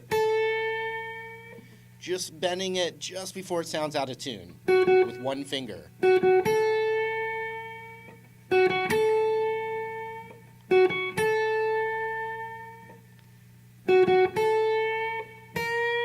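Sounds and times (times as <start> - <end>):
electric guitar blues lick: 0.0 - 2.6, 4.0 - 13.2, 13.8 - 16.0.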